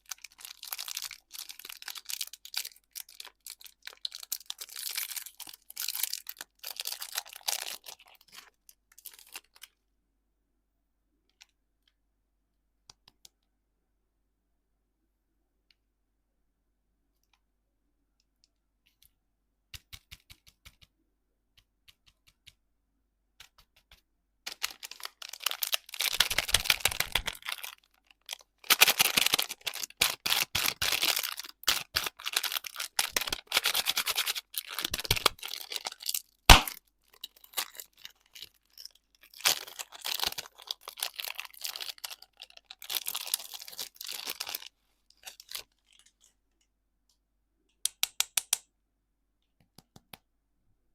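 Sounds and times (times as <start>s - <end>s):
plastic wrapper crinkling: 0.0s - 9.8s, 24.5s - 46.5s
wrapper snapping: 24.5s - 46.3s.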